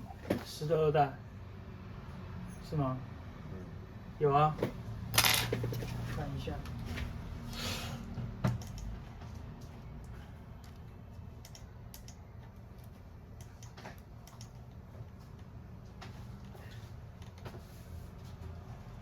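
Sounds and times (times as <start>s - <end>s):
light keyboard clicks: 8.6s - 14.8s.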